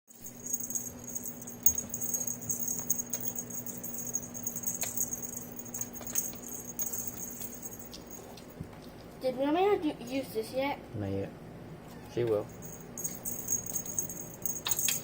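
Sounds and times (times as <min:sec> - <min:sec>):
small bell jingling: 0:00.1 - 0:08.6, 0:12.4 - 0:15.0
faint low hum: 0:00.1 - 0:15.0.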